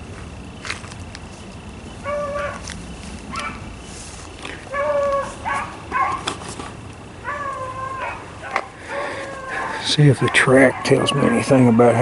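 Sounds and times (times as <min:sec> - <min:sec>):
dogs baying: 0:02.0 - 0:02.7, 0:03.3 - 0:03.7, 0:04.6 - 0:06.4, 0:07.2 - 0:12.0.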